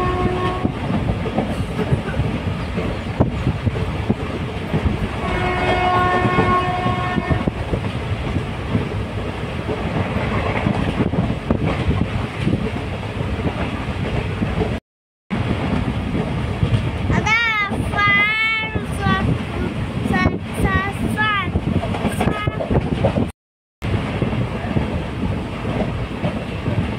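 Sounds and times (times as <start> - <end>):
train horn blast: 0.0 - 0.8, 5.2 - 7.6
train rumbling on rails: 0.0 - 26.9.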